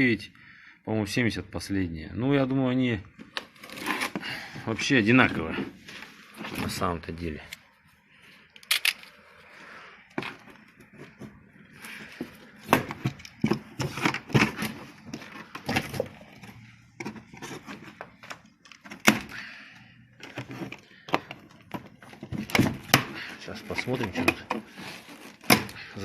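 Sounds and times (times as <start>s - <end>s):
objects knocking and clicking: 12.0s - 19.4s, 20.2s - 24.7s.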